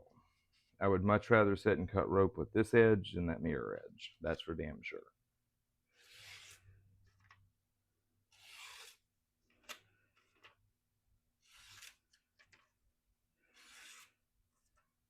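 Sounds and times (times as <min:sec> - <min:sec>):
knife slicing rope: 0:08.3 - 0:09.1, 0:11.4 - 0:12.2, 0:13.5 - 0:14.3.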